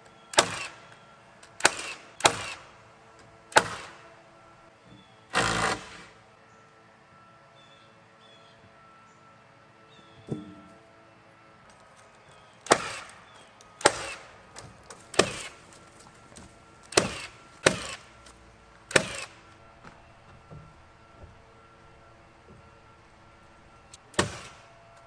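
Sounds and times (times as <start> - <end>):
nails hammered into timber: 0.3 - 0.8, 1.6 - 2.6, 3.5 - 4.0, 12.6 - 13.2, 13.8 - 15.6, 16.9 - 18.1, 18.9 - 19.3, 24.1 - 24.7.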